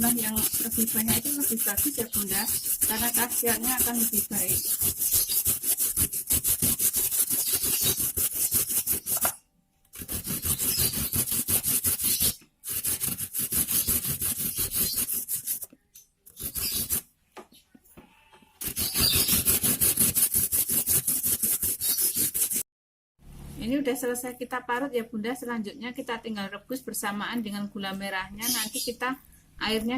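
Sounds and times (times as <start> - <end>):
root rasping on a hand grater: 0.0 - 9.4, 10.0 - 15.7, 16.3 - 17.1, 18.6 - 22.6.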